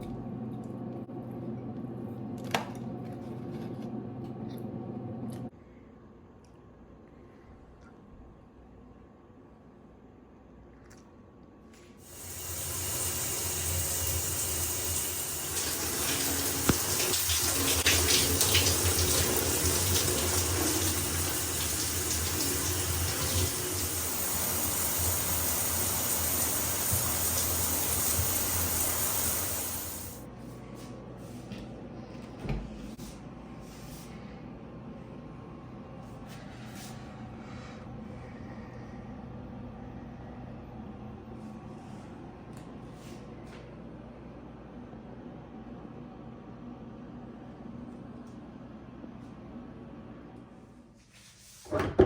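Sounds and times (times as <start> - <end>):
tap water running into sink: 12.1 - 30.2.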